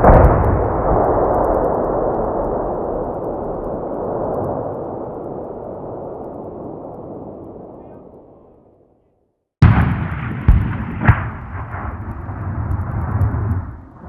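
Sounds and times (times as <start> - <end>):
cannon blast: 0.0 - 5.9, 9.6 - 14.0
long rolling rumble: 9.6 - 14.0.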